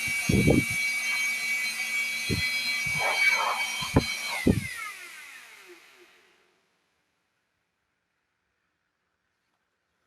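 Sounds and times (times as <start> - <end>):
small motor spinning down: 0.0 - 6.6.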